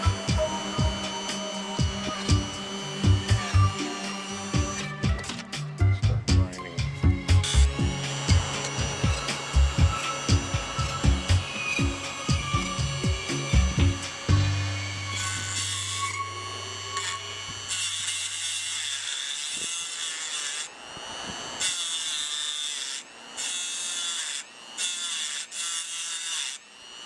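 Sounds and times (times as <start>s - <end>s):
low hum: 0.0s - 17.7s
rotary tool grinding metal: 0.0s - 27.0s.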